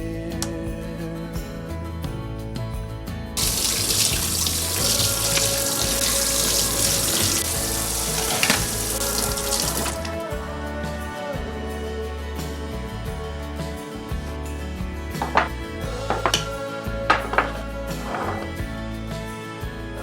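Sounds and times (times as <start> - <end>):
background music: 0.0 - 20.0
water running from a tap: 3.4 - 10.2, 16.1 - 16.6.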